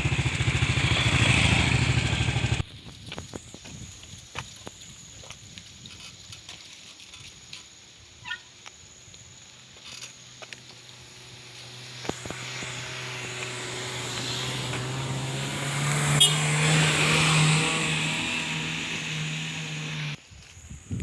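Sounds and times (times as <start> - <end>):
vehicle engine humming: 0.0 - 2.8, 9.9 - 20.2.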